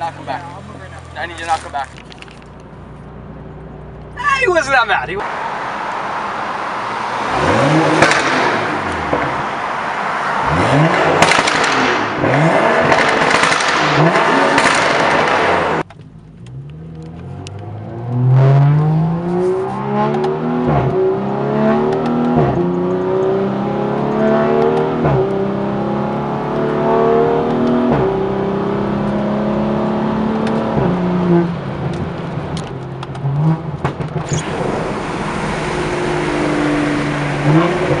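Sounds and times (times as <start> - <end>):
exhaust pops and crackles: 0.3 - 2.8, 8.0 - 9.4, 11.1 - 18.2, 31.8 - 36.0
car engine revving hard: 5.2 - 15.8, 17.4 - 31.8, 33.2 - 38.0.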